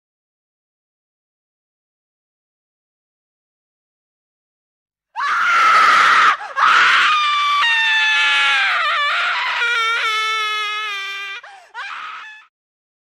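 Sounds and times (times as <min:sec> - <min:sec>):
person screaming: 0:05.2 - 0:12.5.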